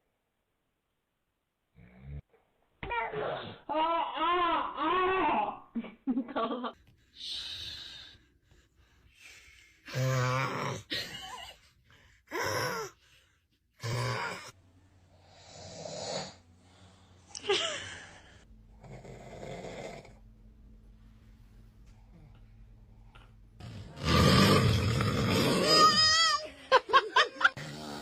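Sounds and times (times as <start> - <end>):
man snoring: 9.9 - 10.9, 13.8 - 14.6, 15.2 - 16.8, 18.7 - 20.2, 23.6 - 25.9, 27.6 - 28.0.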